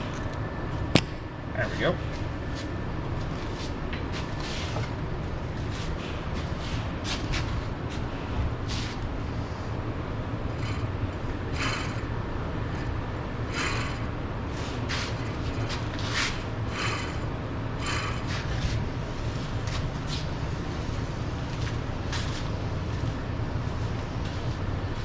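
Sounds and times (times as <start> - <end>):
steady low hum: 0.0 - 25.0
hand tools rasping on metal: 11.6 - 12.1, 13.5 - 14.1, 14.9 - 18.6.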